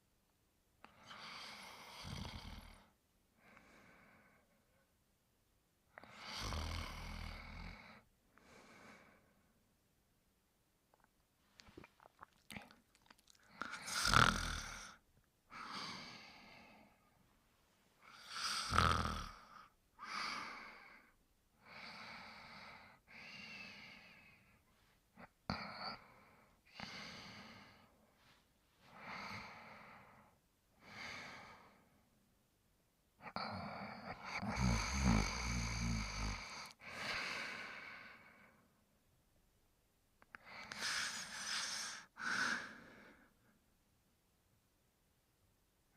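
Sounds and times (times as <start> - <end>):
person snoring: 1.1 - 2.8, 6.0 - 8.0, 11.8 - 15.0, 18.1 - 20.8, 33.3 - 37.4.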